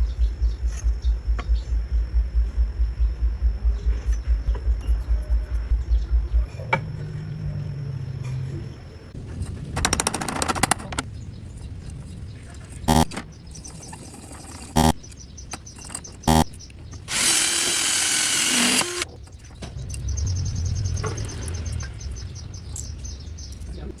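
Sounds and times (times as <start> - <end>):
drill bursts: 12.9 - 13.2, 14.1 - 15.0, 16.3 - 19.1
tool clicking: 14.2 - 19.1
hissing power tool: 17.1 - 19.1.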